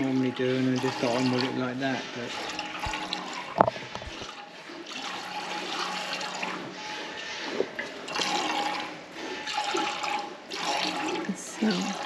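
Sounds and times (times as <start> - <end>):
milk squirting into bucket: 7.7 - 12.0.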